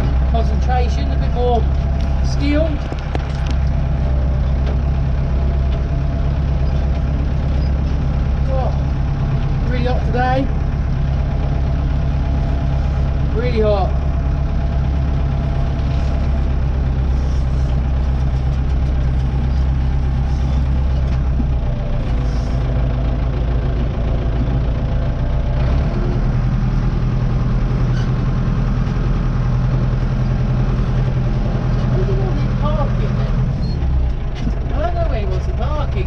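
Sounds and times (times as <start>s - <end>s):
tractor engine droning: 0.0s - 36.0s.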